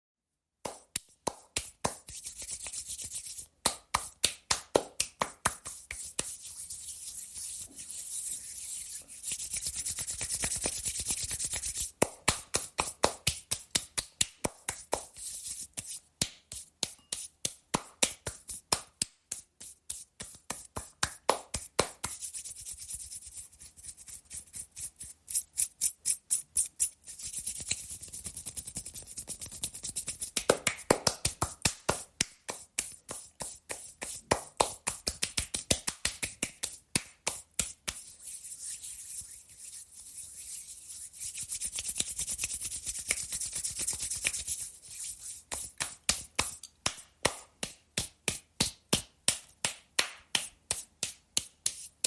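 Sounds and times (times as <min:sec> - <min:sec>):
hands brushing palm against palm: 0:00.6 - 0:48.4
hands brushing together: 0:05.0 - 0:12.0, 0:36.4 - 0:47.4.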